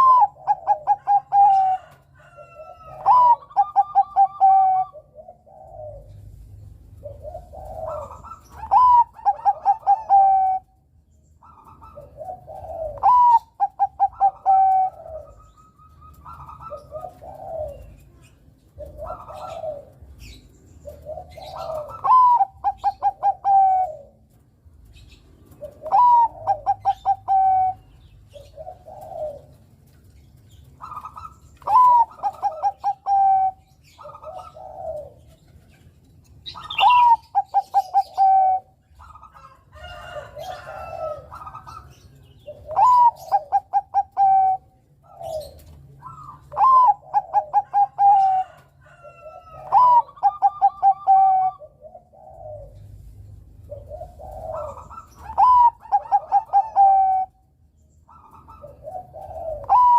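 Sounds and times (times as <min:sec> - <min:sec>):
dove cooing: 0:00.0 - 0:59.9.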